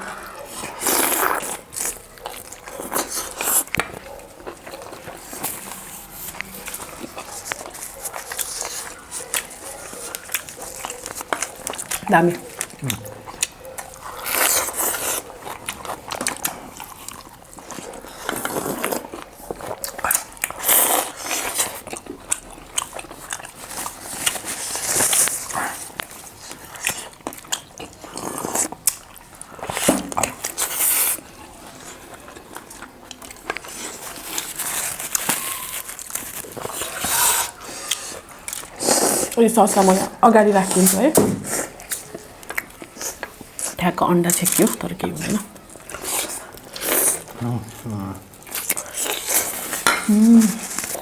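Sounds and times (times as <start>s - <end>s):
wet mouth noises: 0.0s - 17.2s, 34.0s - 51.0s
chewing crunches: 0.0s - 51.0s.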